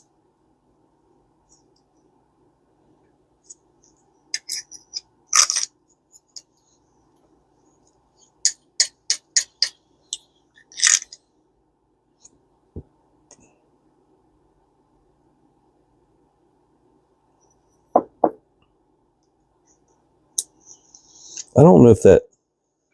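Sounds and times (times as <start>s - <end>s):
metal parts clicking and scraping: 4.3s - 6.5s, 10.6s - 11.2s.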